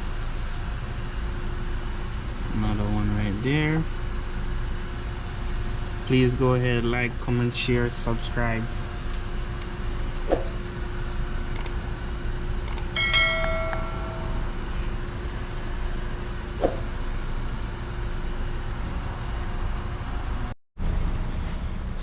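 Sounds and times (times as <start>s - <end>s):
sharp metallic clink ringing: 13.0s - 14.5s.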